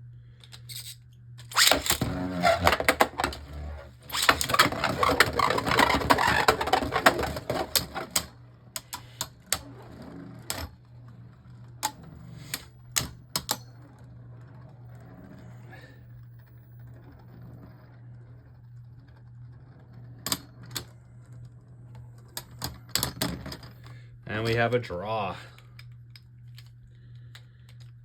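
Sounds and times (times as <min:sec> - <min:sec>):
spinning tops clacking and rattling: 0:01.5 - 0:08.3.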